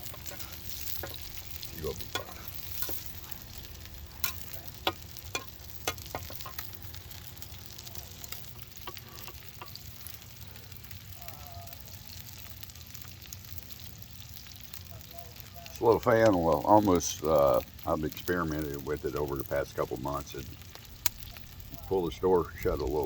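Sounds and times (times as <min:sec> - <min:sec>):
squid sizzling: 0:00.0 - 0:23.0.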